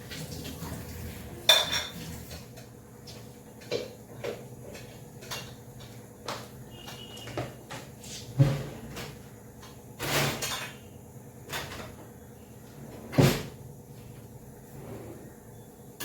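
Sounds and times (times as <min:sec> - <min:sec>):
kitchen knocks and clatter: 0:01.4 - 0:10.8, 0:11.5 - 0:12.1.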